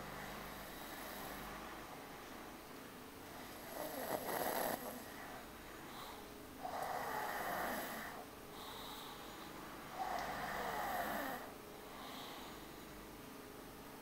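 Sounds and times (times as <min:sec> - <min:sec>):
quiet breathing: 0:00.0 - 0:14.0
man snoring heavily: 0:03.3 - 0:05.3, 0:06.6 - 0:08.9, 0:09.9 - 0:12.5.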